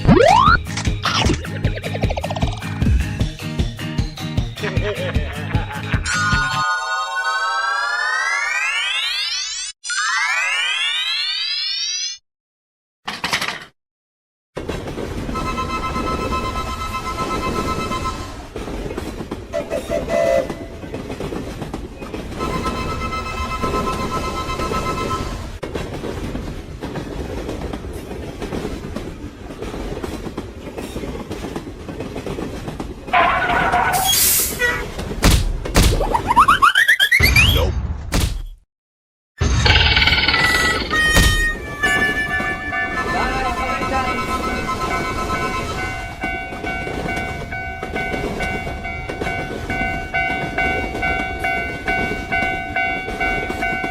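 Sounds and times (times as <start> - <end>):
train rumble with rail clatter: 14.6 - 35.9, 40.9 - 53.9
level-crossing alarm clanging: 15.2 - 21.2, 22.1 - 25.6, 39.6 - 53.9
train horn blast: 15.3 - 18.5, 19.5 - 20.9, 22.4 - 25.5.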